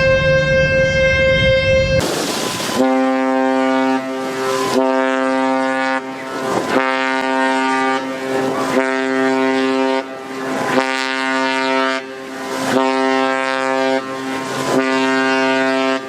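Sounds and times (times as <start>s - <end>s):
ship's horn blasts: 0.0s - 16.0s.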